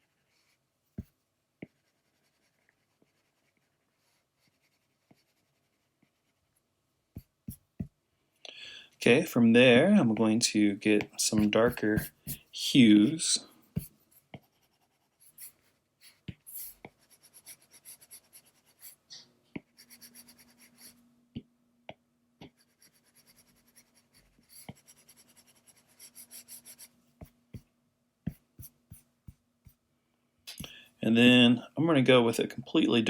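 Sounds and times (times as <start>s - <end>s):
scratchy drawing strokes: 10.9s - 19.0s, 19.7s - 21.0s, 22.6s - 27.0s
drawing tool tapping: 11.0s - 12.4s, 28.3s - 29.8s.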